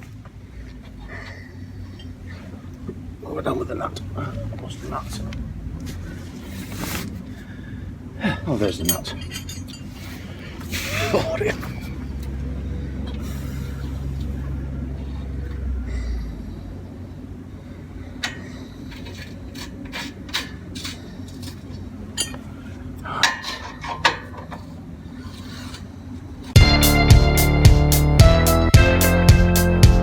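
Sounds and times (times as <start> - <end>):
low steady rumble: 0.0 - 23.2
spanners clinking on metal: 8.7 - 10.3, 18.2 - 22.6, 23.2 - 26.6.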